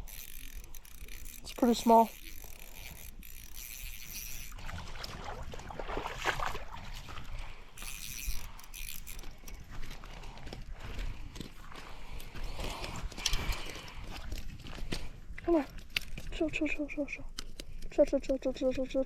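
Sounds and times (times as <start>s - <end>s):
fishing tackle clicks and rattles: 0.0s - 4.6s, 7.8s - 18.4s
spinning reel winding line: 0.0s - 4.6s, 7.8s - 9.6s.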